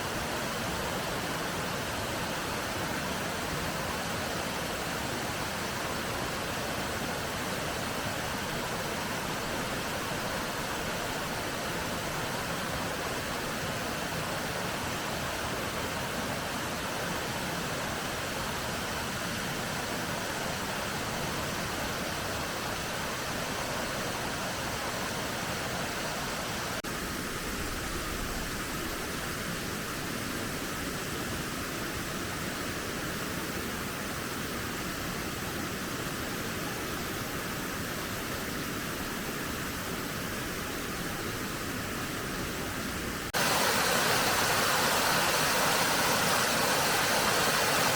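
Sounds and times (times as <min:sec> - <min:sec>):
water rushing over rocks: 0:00.0 - 0:27.0, 0:39.0 - 0:47.9.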